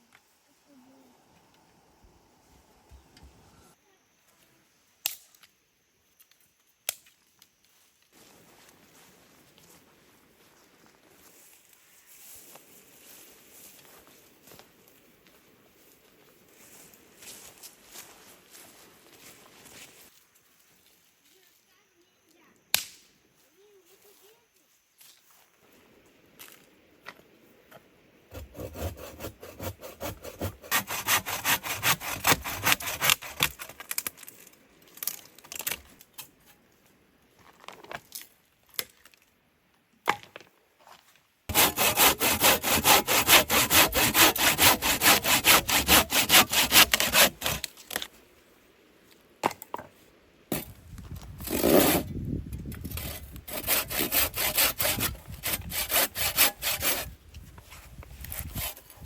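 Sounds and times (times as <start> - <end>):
hand saw cutting wood: 28.3 - 33.7, 41.5 - 47.7, 51.4 - 52.1, 52.9 - 57.1, 58.2 - 59.0.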